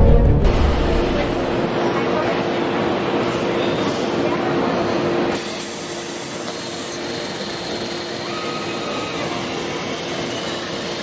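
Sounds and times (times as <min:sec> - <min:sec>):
faint higher tone: 0:00.0 - 0:01.6
two-tone hum: 0:00.0 - 0:01.7
factory machinery running: 0:00.0 - 0:04.0.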